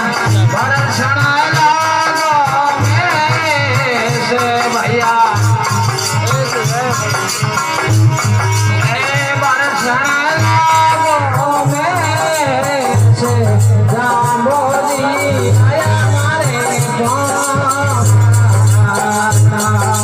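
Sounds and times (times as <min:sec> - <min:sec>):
devotional instrumental music: 0:00.0 - 0:20.0
fast percussion ticks: 0:00.0 - 0:20.0
low beat: 0:00.0 - 0:20.0.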